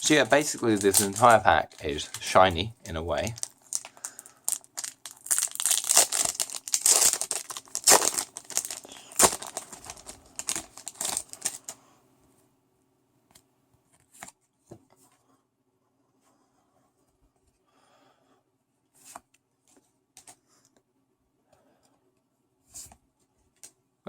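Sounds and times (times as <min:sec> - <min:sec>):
foil wrapper crinkling: 0:00.0 - 0:11.8.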